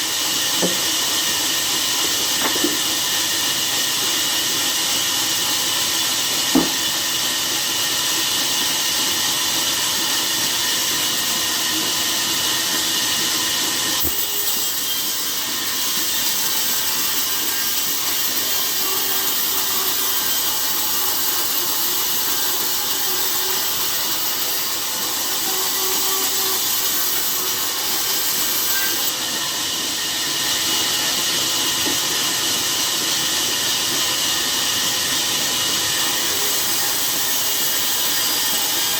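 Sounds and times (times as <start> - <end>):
sawmill machinery hissing: 0.0 - 38.9
sharp knock: 6.5 - 6.8.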